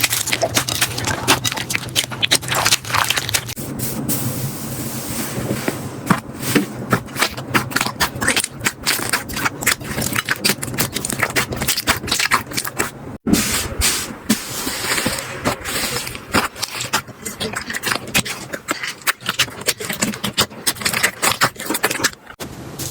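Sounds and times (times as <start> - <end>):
slime squishing with sticky pops: 0.0 - 3.6, 6.1 - 13.0, 14.8 - 22.4.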